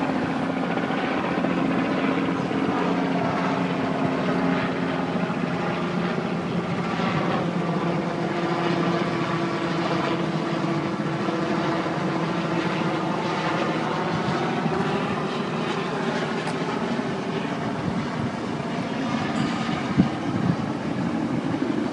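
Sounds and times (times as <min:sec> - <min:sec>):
helicopter engine and rotor drone: 0:00.0 - 0:21.9.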